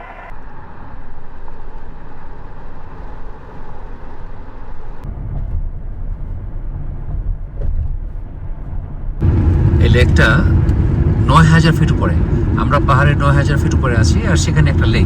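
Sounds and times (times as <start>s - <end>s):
car tyre and engine rumble: 0.3s - 15.0s
road noise hiss: 8.0s - 15.0s.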